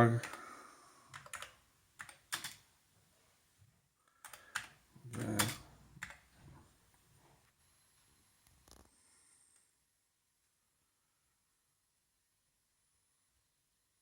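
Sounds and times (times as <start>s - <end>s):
keyboard keystrokes: 1.1s - 2.6s, 4.2s - 6.2s.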